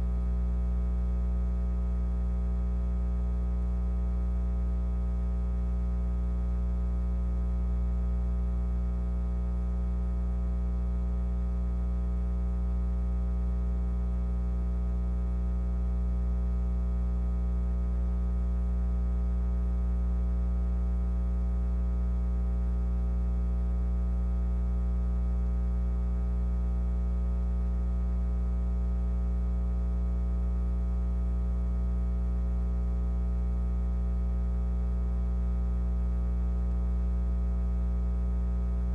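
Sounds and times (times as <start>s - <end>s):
low electrical hum: 0.0s - 38.9s.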